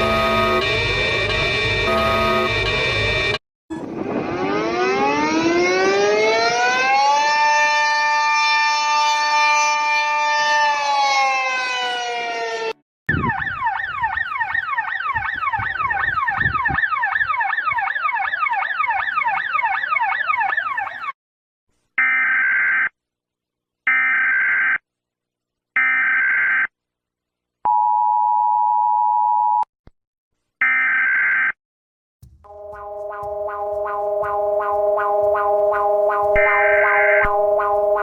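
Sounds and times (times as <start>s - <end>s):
two-tone attention signal: 0.0s - 0.9s, 1.8s - 2.7s, 32.5s - 38.0s
falling siren tone: 0.0s - 21.2s, 32.4s - 38.0s
rapid downward electronic sweeps: 3.7s - 7.6s, 32.5s - 38.0s
low thumps: 32.2s - 38.0s
electronic beeps: 32.5s - 38.0s.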